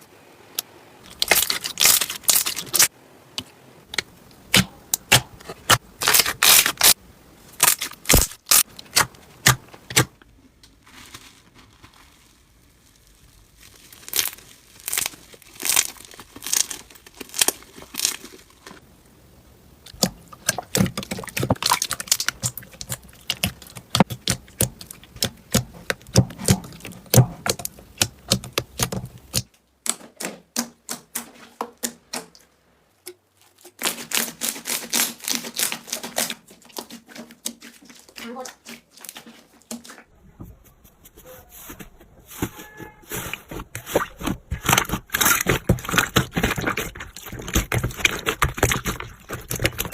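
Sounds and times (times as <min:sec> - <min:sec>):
slime crackling and popping: 0:01.1 - 0:02.9, 0:04.5 - 0:18.8, 0:19.8 - 0:30.0, 0:33.4 - 0:39.2, 0:43.1 - 0:49.9.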